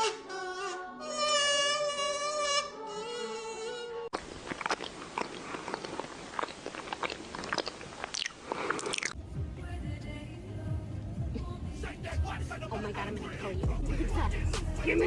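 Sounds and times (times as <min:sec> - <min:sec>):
crunchy chewing: 0:04.1 - 0:09.2.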